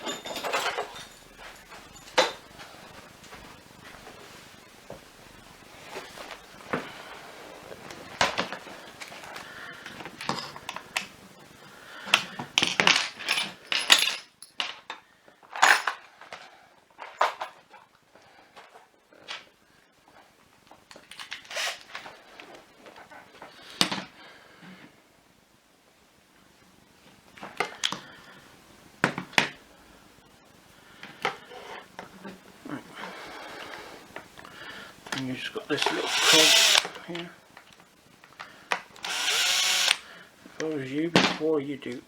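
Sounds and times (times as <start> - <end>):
small plastic and metal parts clattering: 0.0 - 2.5, 10.1 - 11.1, 12.1 - 16.4.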